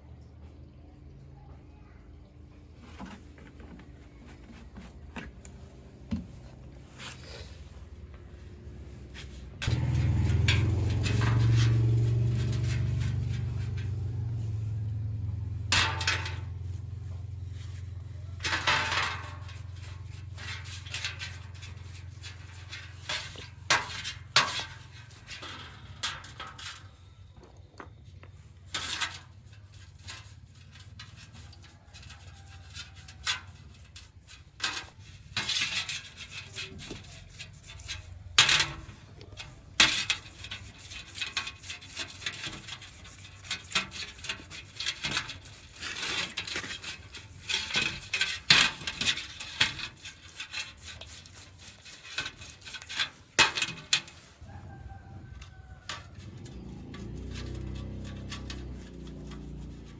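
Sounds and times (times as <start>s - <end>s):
clinks and scraping on metal: 2.8s - 59.9s
steady low hum: 4.0s - 21.6s.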